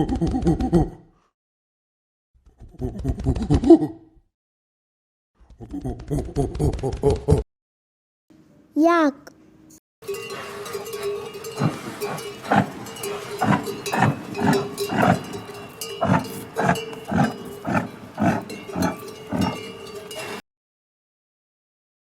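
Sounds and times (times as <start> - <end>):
yak grunting: 10.1 - 20.4.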